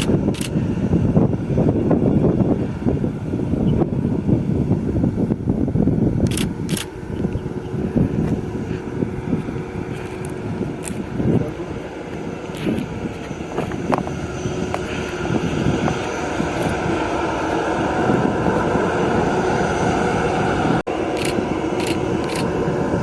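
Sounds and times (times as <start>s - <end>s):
jet engines at taxi power: 0.0s - 23.0s.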